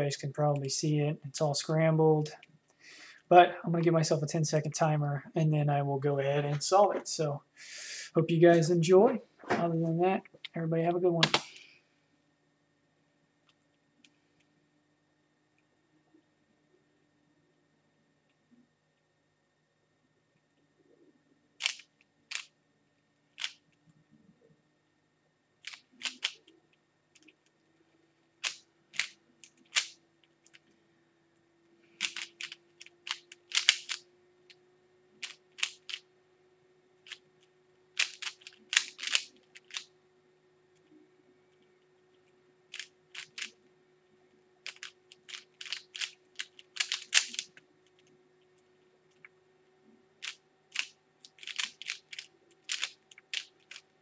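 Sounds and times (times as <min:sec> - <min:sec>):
puzzle cube plastic clicks: 0:21.6 - 0:22.5, 0:23.4 - 0:23.6, 0:25.6 - 0:26.4, 0:28.4 - 0:30.6, 0:32.0 - 0:34.0, 0:35.2 - 0:36.0, 0:38.0 - 0:39.9, 0:42.7 - 0:43.6, 0:44.7 - 0:48.2, 0:50.2 - 0:53.9.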